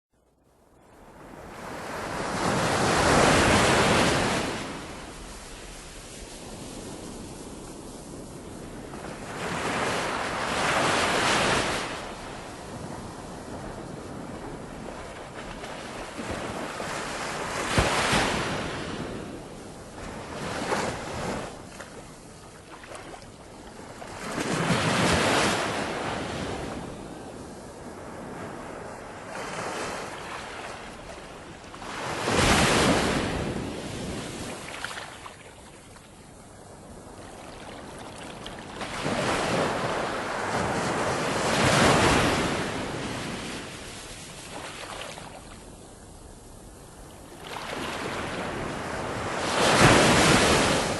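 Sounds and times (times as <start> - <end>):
wind: 0.1 - 50.9
ocean waves breaking: 1.2 - 27.1.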